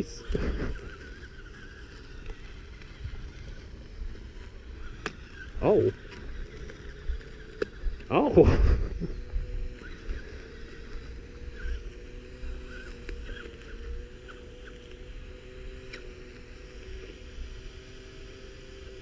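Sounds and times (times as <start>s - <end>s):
toy motor whining: 0.0s - 19.0s.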